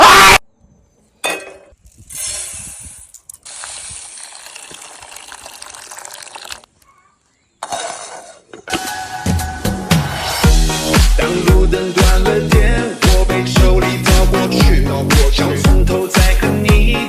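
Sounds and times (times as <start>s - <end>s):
water pouring: 2.0s - 6.7s.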